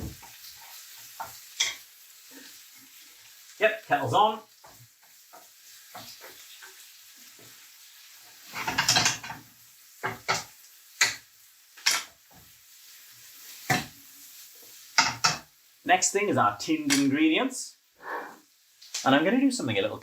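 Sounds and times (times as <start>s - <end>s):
vegetables sizzling in a frying pan: 0.0s - 20.0s
spoon scraping a pan: 4.5s - 11.2s, 14.6s - 15.5s.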